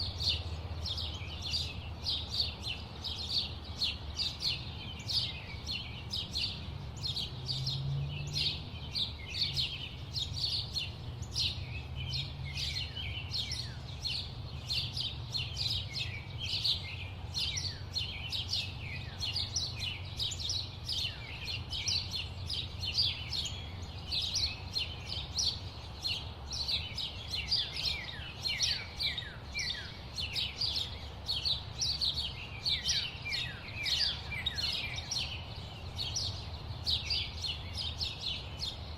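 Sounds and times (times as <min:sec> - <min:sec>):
low rumble of city noise: 0:00.0 - 0:38.9
small birds chirping: 0:00.0 - 0:38.9.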